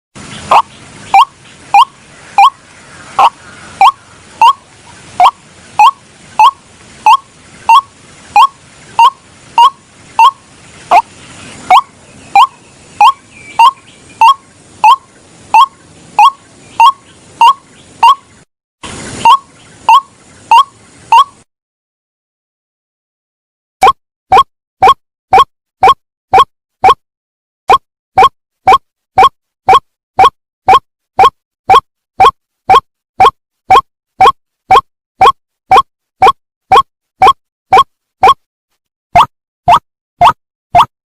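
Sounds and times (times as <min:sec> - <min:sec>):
bird sharp repeated call: 0:00.2 - 0:21.5.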